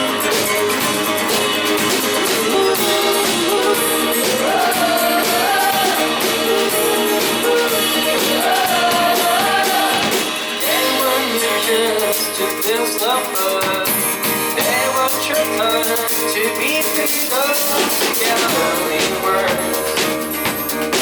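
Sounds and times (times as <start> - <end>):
sliding melody line: 0.0 - 13.0, 18.0 - 21.0
live rock band playing: 0.0 - 21.0
deep bass: 18.5 - 21.0.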